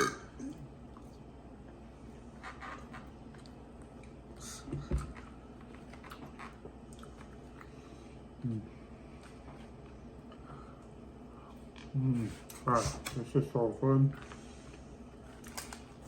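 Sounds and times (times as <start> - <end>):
man chewing food: 0.0 - 12.6.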